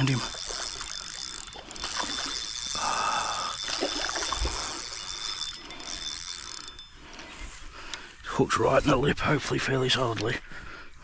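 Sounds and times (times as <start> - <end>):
creek water trickling and splashing: 0.0 - 5.9.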